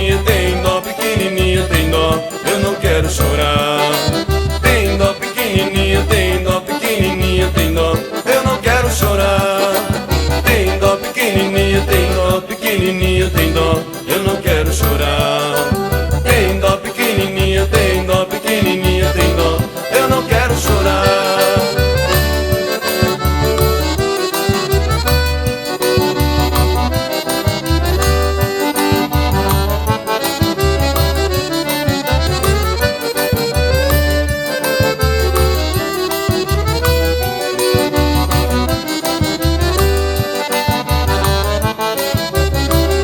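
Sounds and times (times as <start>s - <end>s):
accordion melody: 0.0s - 43.0s
low drum beat: 13.1s - 34.2s.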